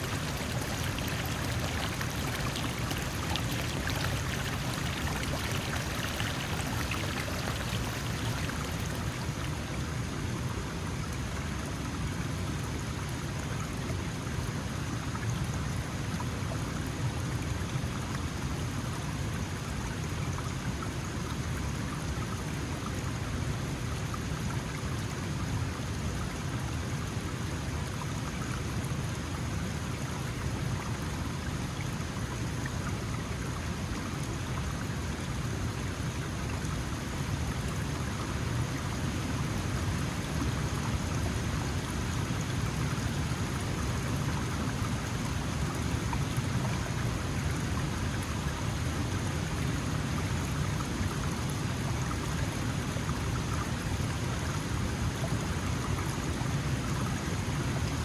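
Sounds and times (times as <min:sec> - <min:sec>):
stream splashing over stones: 0:00.0 - 0:10.2.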